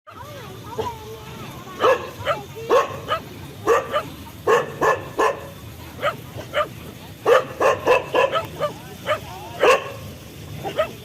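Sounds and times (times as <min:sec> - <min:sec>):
dog barking: 0:01.8 - 0:11.0.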